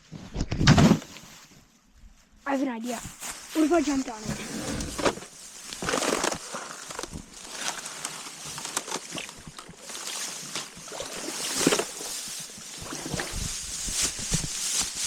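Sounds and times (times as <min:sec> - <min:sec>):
creek ice crunching: 0:02.9 - 0:15.0
water sloshing: 0:03.9 - 0:14.8.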